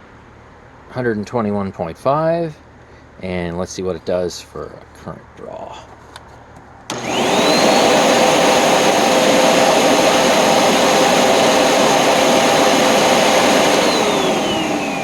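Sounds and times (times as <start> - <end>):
vacuum motor high whine: 6.9 - 15.0.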